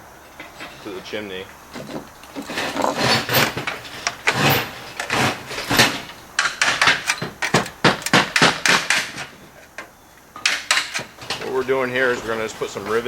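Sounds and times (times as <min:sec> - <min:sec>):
sheet metal scraping and rustling: 0:00.0 - 0:09.8, 0:10.4 - 0:13.0
sharp taps on metal: 0:05.8 - 0:11.5.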